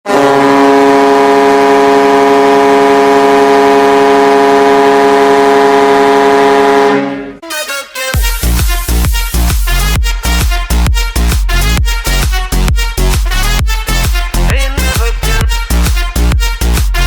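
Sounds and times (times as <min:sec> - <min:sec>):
goal horn blast: 0:00.1 - 0:17.0
electronic dance music: 0:07.4 - 0:17.0
heavy bass beat: 0:08.2 - 0:17.0.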